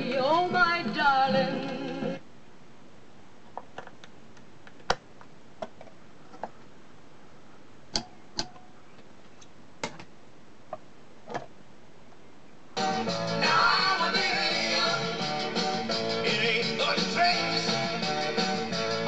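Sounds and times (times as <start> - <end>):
record surface hiss: 0.0 - 19.0
vinyl clicks and pops: 3.5 - 6.6, 7.9 - 8.7.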